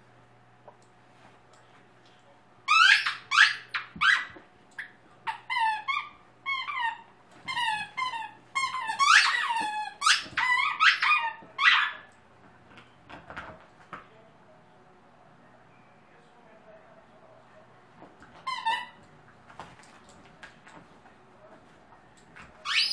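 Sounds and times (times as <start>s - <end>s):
squeaky dog toy squeaking: 2.7s - 4.4s, 5.2s - 12.1s, 18.4s - 19.0s, 22.6s - 22.9s.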